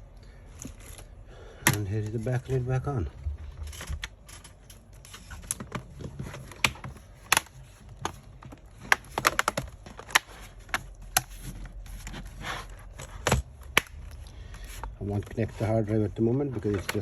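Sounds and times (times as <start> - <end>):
laptop cover clicking and knocking: 5.6 - 11.3.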